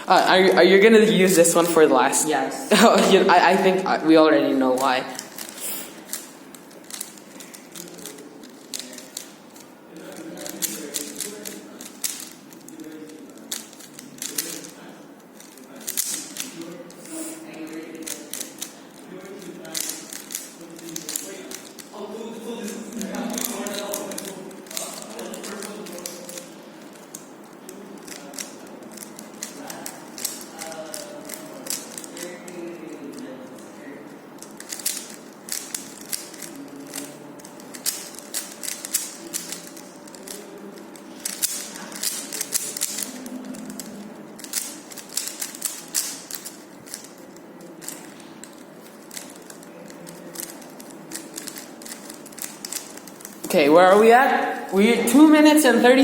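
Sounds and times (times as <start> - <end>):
puzzle cube clicking: 4.8 - 14.8, 15.4 - 21.9, 22.6 - 32.6, 34.4 - 53.4.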